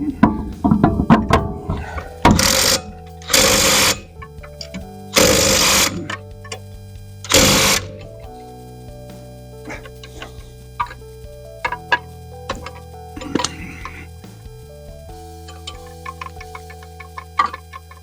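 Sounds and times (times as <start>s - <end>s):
background music: 0.0s - 18.0s
impact wrench bursts: 0.7s - 6.7s, 7.3s - 8.1s, 11.6s - 14.0s.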